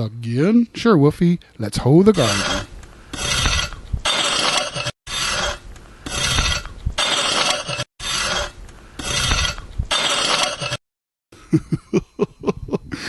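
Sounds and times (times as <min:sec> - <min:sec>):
hoe scraping soil: 0:02.0 - 0:10.8.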